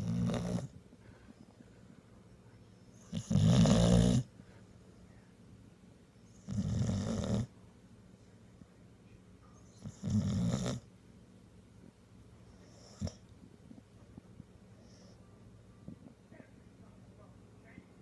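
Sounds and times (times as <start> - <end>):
puppy snoring: 0.0 - 0.8, 2.9 - 4.3, 6.3 - 7.5, 9.6 - 10.9, 12.6 - 13.3.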